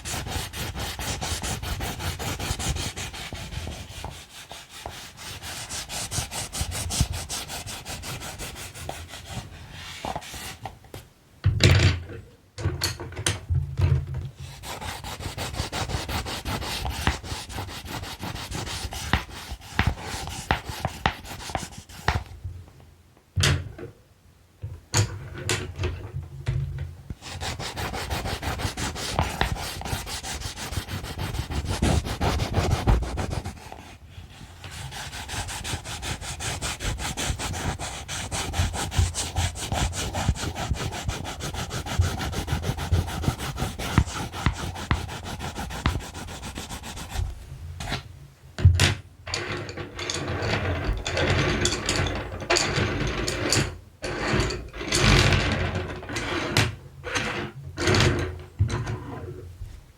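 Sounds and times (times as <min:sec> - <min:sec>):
colored pencils scratching paper: 0:00.0 - 0:10.7, 0:14.4 - 0:22.3, 0:27.2 - 0:47.4.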